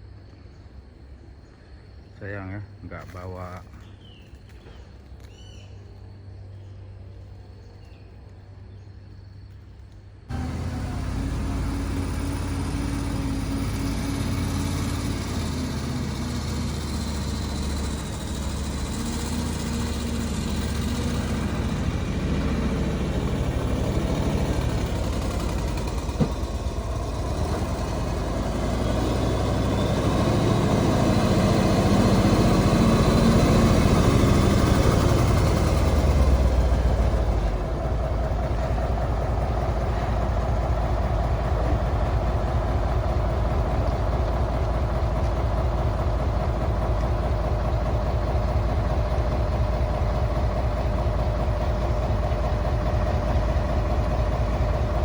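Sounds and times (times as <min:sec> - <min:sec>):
heavy machine engine running: 0:10.3 - 0:55.0.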